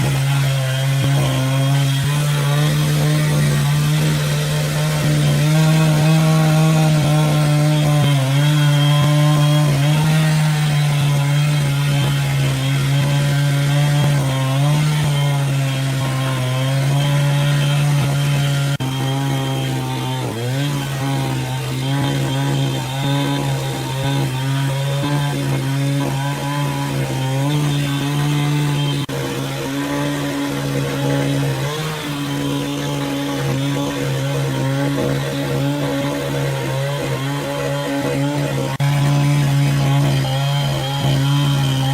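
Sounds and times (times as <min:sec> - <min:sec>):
engine saw cutting wood: 0:00.0 - 0:41.9.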